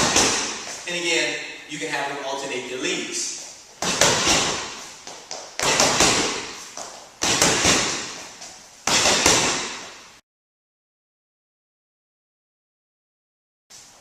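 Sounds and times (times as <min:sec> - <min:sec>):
punches thumping heavy bag: 0:00.0 - 0:00.7, 0:03.8 - 0:04.8, 0:05.6 - 0:06.6, 0:07.2 - 0:08.2, 0:08.9 - 0:09.9.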